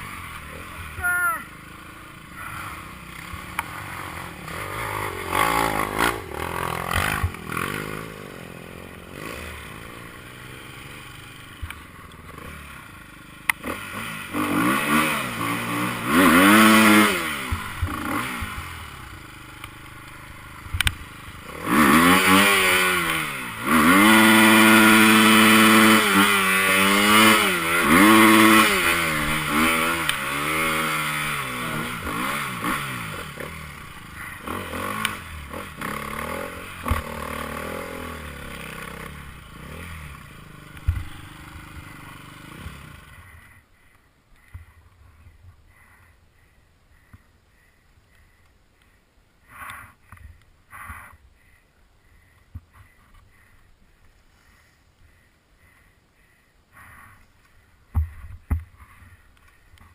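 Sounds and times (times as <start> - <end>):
motorcycle engines revving: 0.0 - 45.0.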